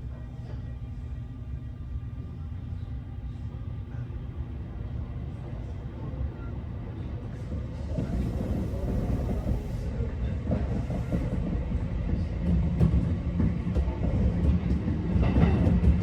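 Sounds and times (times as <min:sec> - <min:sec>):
electric train rumbling past: 0:04.5 - 0:16.0.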